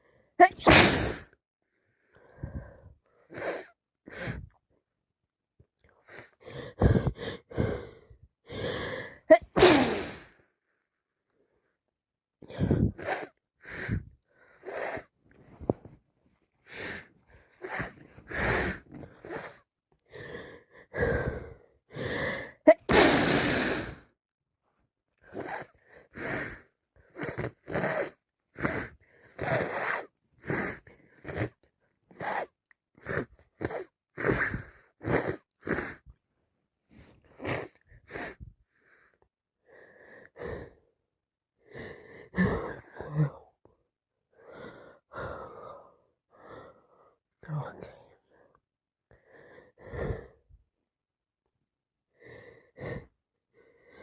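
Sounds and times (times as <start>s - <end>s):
woman sneezing: 0.4s - 1.3s, 9.3s - 10.2s, 22.7s - 23.5s
woman gasping breaths: 2.0s - 4.6s, 6.0s - 10.4s, 12.4s - 15.8s, 16.6s - 24.1s.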